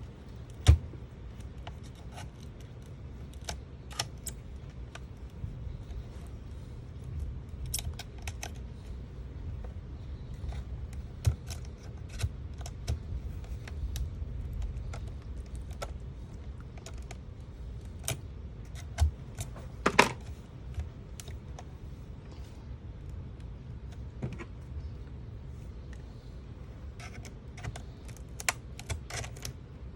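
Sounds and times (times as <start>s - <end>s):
plastic clips cracking: 27.0s - 29.6s.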